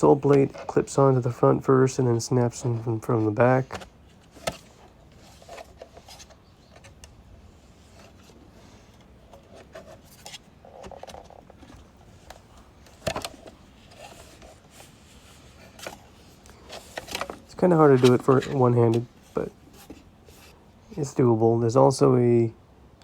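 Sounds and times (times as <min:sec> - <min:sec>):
plastic rubbing: 0:02.8 - 0:21.1.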